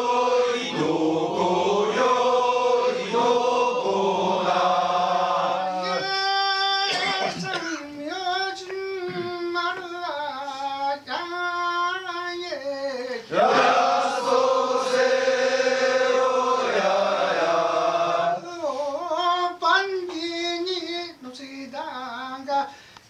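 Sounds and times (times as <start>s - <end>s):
group of voices chanting: 0.0s - 6.2s, 13.3s - 18.4s.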